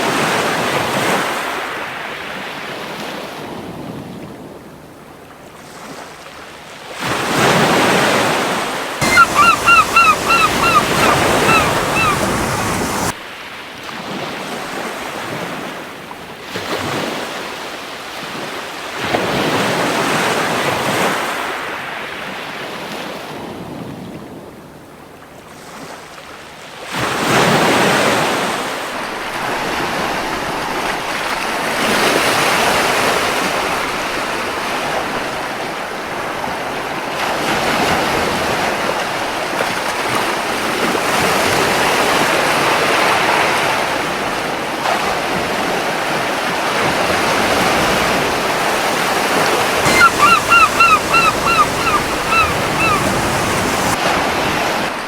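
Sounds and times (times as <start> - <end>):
seagull calling: 9.0 - 13.1, 49.8 - 54.0
surf washing onto beach: 9.0 - 13.2, 46.8 - 54.9.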